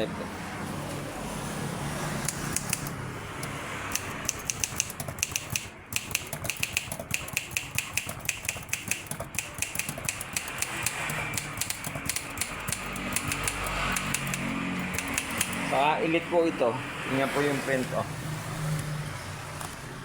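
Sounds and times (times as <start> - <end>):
typewriter keys clacking: 4.0 - 15.7.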